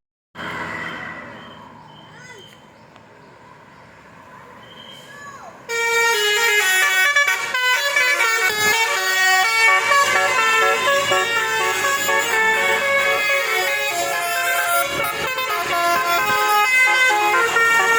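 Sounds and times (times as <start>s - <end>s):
bus horn playing a melody: 5.7s - 17.9s.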